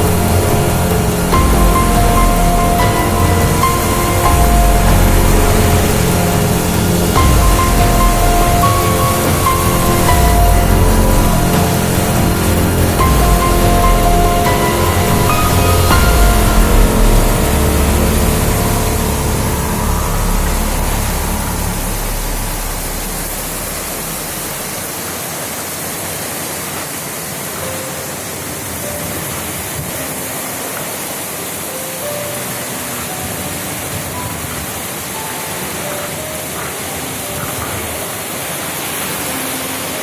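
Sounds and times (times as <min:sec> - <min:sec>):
storm wind rushing: 0:00.0 - 0:25.1.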